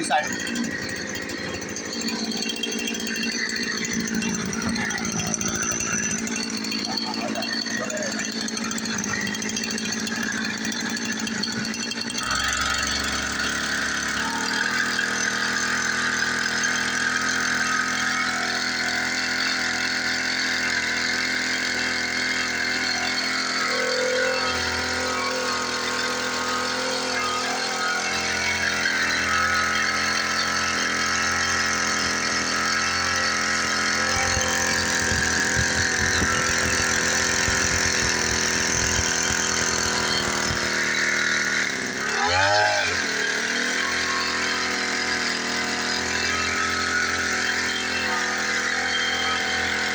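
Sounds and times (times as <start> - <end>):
sprayer engine running: 0.0 - 49.9.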